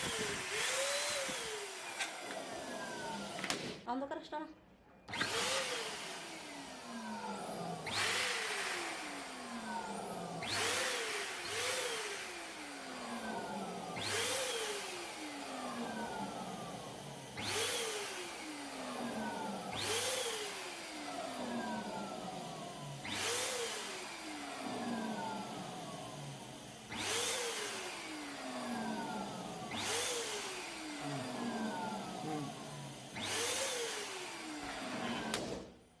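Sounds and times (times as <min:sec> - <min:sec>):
electric balloon pump whirring: 0:00.0 - 0:03.8, 0:05.1 - 0:35.9.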